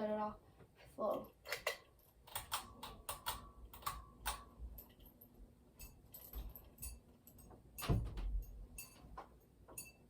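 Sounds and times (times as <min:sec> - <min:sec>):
thump: 0:07.8 - 0:08.3.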